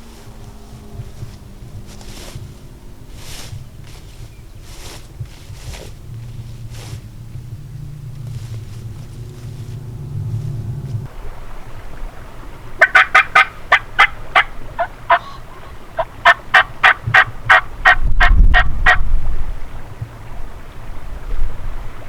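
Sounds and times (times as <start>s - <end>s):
wind buffeting microphone: 0.0s - 22.0s
turkey yelps: 12.8s - 19.0s.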